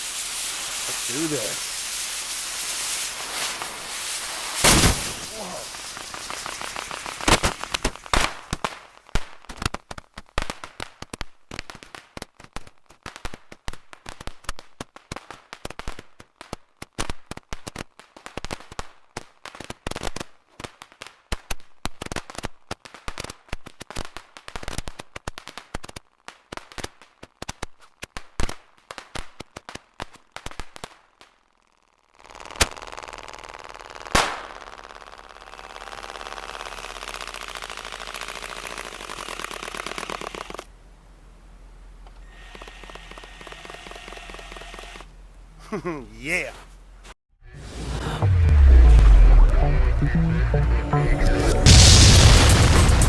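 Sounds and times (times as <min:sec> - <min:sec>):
roman candles firing: 0:00.0 - 0:08.6
loud single bangs: 0:04.6 - 0:05.6.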